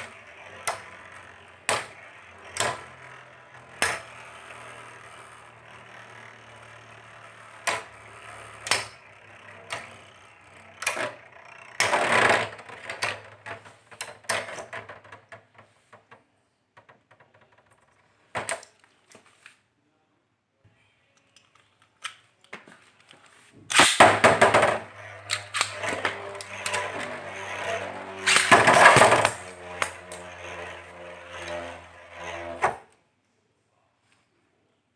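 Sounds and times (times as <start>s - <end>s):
spinning tops clashing: 23.7s - 32.7s.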